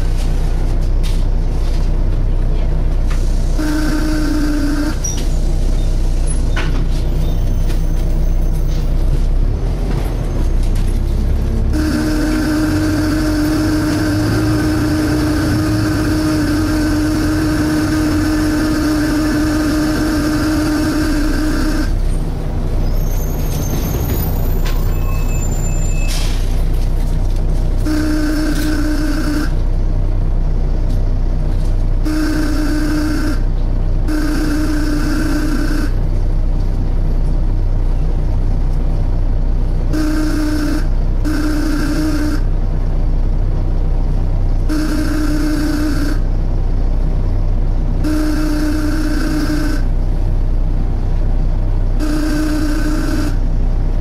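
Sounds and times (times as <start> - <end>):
bus engine drone: 0.0 - 54.0
strong steady suction hum: 3.4 - 5.0, 11.7 - 22.0.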